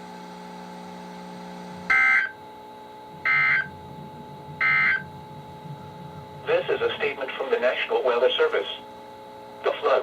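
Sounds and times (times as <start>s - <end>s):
low hum: 0.1s - 10.0s
buzzy digital data bursts: 4.6s - 8.8s
radio hiss: 6.3s - 10.0s.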